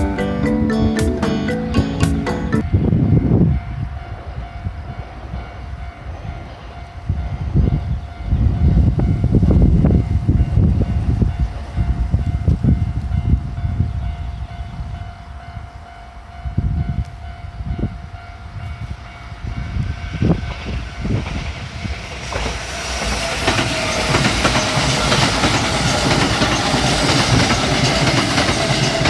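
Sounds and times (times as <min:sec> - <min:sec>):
level-crossing warning bell: 0:00.0 - 0:29.0
train wheels clattering over rails: 0:20.2 - 0:29.0.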